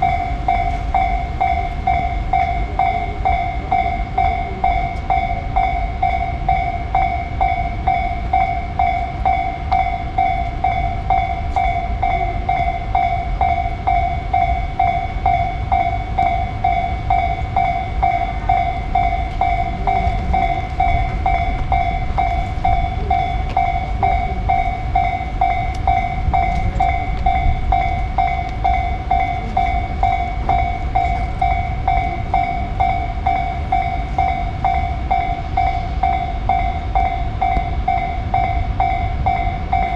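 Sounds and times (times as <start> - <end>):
level crossing alarm ringing: 0.0 - 39.9
low rumble: 14.0 - 39.9.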